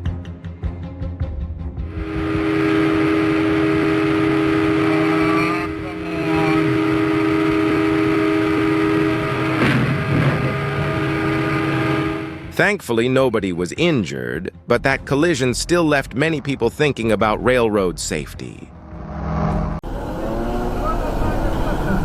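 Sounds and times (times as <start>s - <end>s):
train horn chord: 1.9s - 12.7s
sudden noisy burst: 2.0s - 12.5s.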